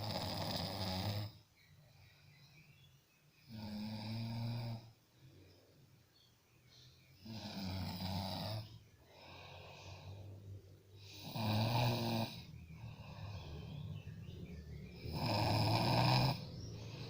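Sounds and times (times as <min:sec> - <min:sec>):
person snoring: 0:00.0 - 0:01.4, 0:03.5 - 0:04.9, 0:07.2 - 0:10.4, 0:11.0 - 0:14.1, 0:15.0 - 0:17.0
soft breath: 0:08.9 - 0:11.2, 0:12.5 - 0:14.8.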